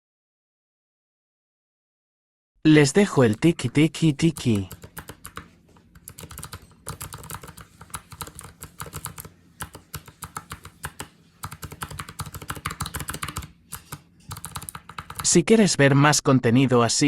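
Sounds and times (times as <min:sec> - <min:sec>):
mechanical keyboard typing: 0:03.1 - 0:15.4.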